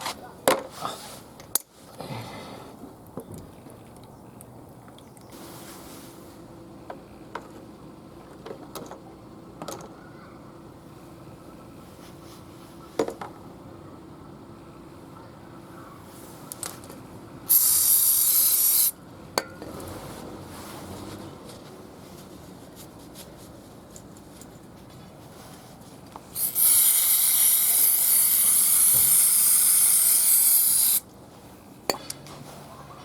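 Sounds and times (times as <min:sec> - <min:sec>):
aerosol can spray hiss: 0:17.5 - 0:19.0, 0:26.4 - 0:31.0.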